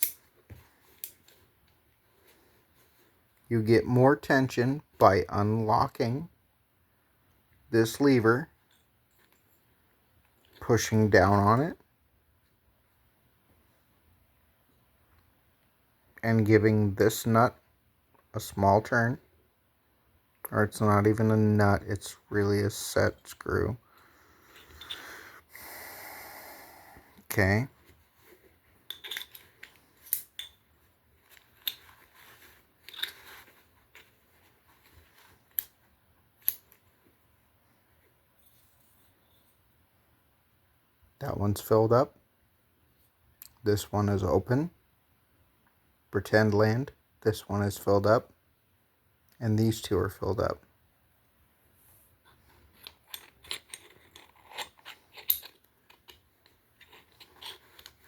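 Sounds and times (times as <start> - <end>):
faint handling noise: 0.0 - 6.0, 7.2 - 11.6, 27.1 - 39.8, 51.6 - 58.0.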